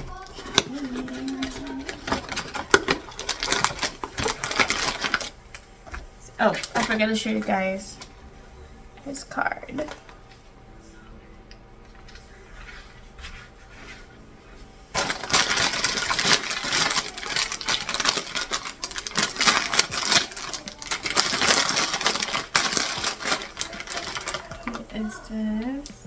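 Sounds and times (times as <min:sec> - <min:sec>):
packaging crinkling and rustling: 0:00.0 - 0:08.1, 0:09.7 - 0:10.4, 0:14.9 - 0:26.0.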